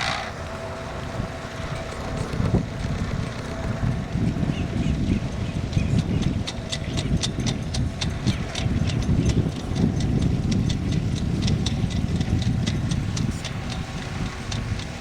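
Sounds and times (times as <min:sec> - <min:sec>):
quick irregular rattles: 0:00.0 - 0:00.4
low rumble of wind and water: 0:00.0 - 0:15.0.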